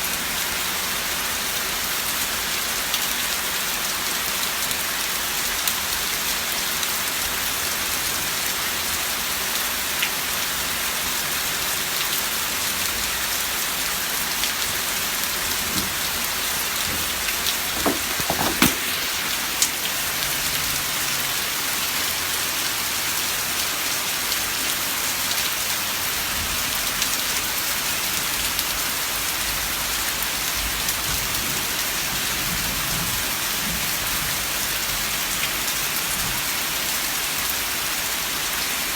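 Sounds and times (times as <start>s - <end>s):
light knocks: 16.8s - 19.4s.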